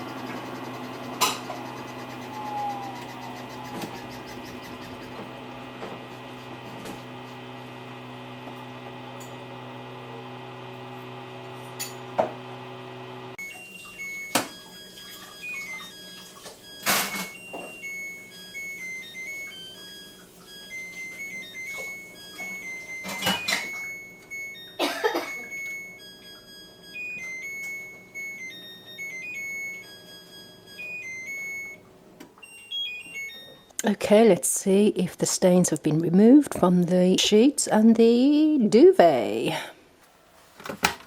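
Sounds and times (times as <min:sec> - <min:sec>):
washing machine humming: 0:00.0 - 0:41.0
electronic beeping tune: 0:13.4 - 0:31.8, 0:32.4 - 0:33.7.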